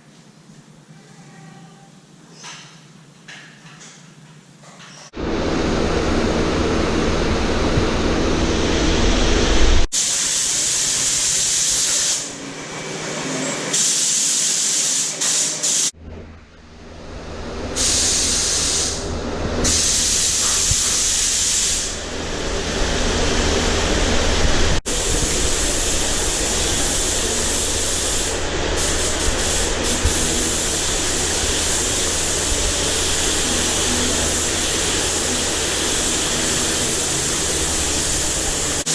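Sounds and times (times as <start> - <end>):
low machine hum: 5.2 - 9.9, 21.9 - 38.9
loud spraying hiss: 9.9 - 12.3, 13.7 - 15.9, 17.8 - 19.0, 19.6 - 22.0, 24.9 - 38.9.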